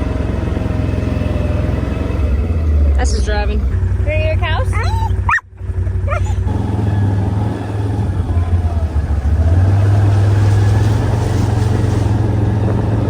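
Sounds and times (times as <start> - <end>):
utility vehicle engine running: 0.0 - 13.0.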